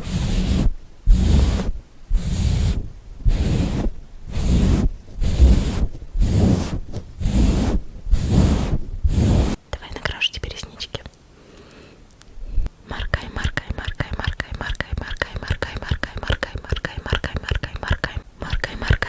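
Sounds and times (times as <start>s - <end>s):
swishing rubbing strokes: 0.0s - 9.6s.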